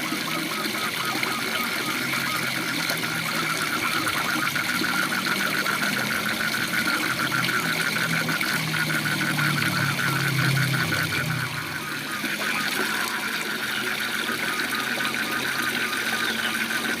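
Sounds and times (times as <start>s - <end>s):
frog calling in pulses: 0.1s - 17.0s
waterfall rushing: 1.6s - 14.0s.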